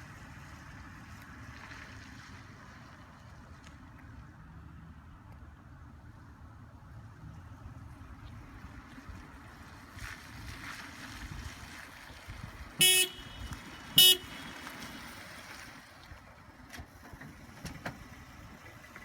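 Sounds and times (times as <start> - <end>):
low rumble of vehicle noise: 0.0 - 19.0
car horn tooting: 12.8 - 15.0.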